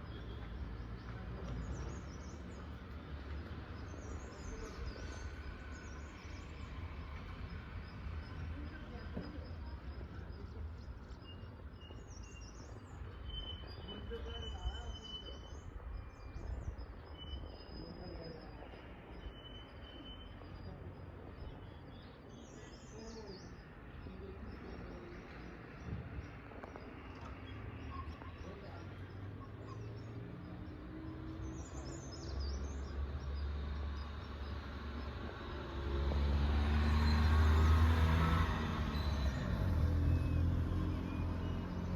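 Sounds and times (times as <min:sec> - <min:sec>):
birds chirping: 0:00.0 - 0:41.9
outdoor background noise: 0:00.0 - 0:41.9
engine approaching: 0:33.0 - 0:41.9.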